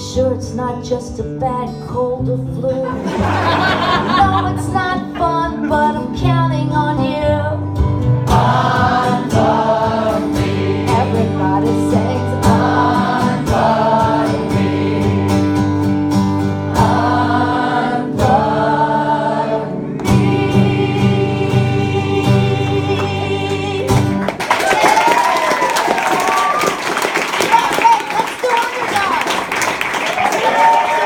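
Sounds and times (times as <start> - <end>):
strummed guitar: 0.0 - 24.4
group of voices singing: 8.2 - 15.8, 16.6 - 24.2.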